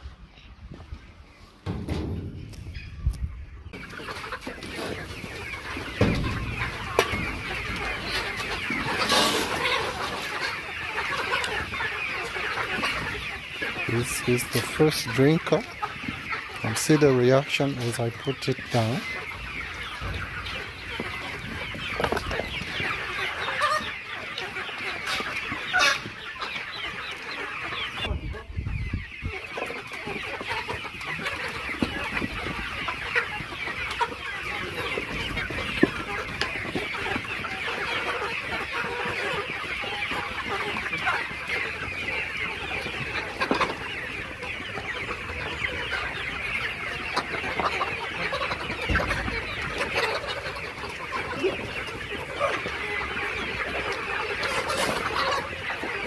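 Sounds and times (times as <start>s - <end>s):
chickens clucking and chirping: 0.0s - 56.0s
knocks: 1.6s - 2.6s.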